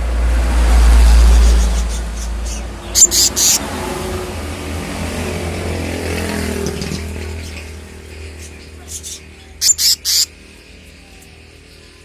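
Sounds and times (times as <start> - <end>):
faint engine-like hum: 0.0 - 12.0
songbird chirps: 1.2 - 3.7, 7.2 - 12.0.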